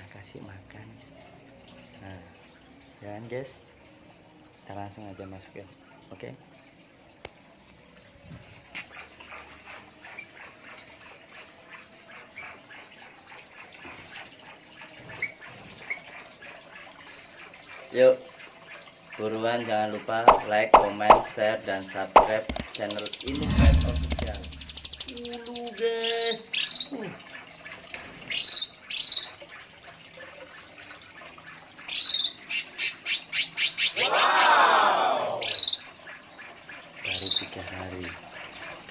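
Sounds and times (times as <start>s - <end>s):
small songbirds chirping: 22.2s - 27.0s.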